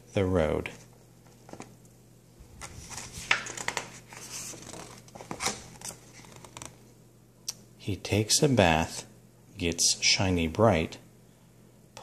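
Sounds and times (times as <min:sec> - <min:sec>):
paper rustling: 0:00.7 - 0:01.8, 0:02.5 - 0:06.8
page scrapes and light clicks: 0:02.6 - 0:06.7.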